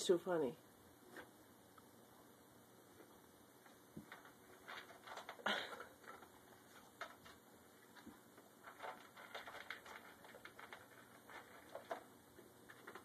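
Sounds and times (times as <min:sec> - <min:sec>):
dog eating crunches: 0:04.0 - 0:13.0.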